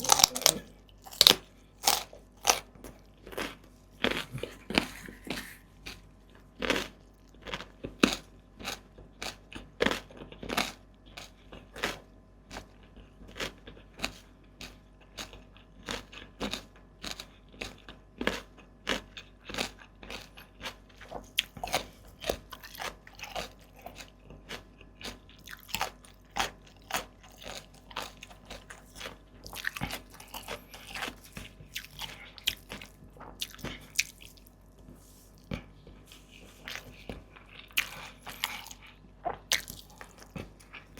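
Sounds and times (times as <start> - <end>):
person chewing crisp crunches: 0.0 - 40.9.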